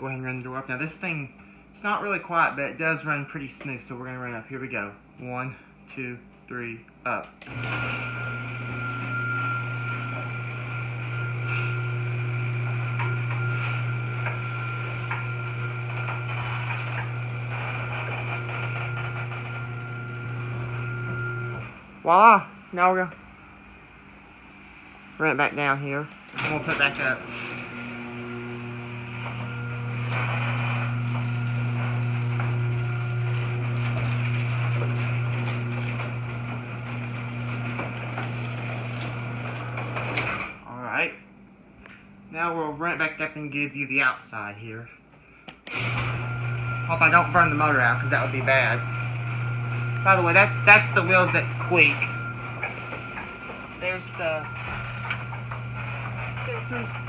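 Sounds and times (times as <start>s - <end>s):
garage door opener motor hum: 7.3s - 25.2s, 26.1s - 40.7s, 45.6s - 57.0s
door rollers squeaking: 7.4s - 22.0s, 26.1s - 40.7s, 45.7s - 57.0s.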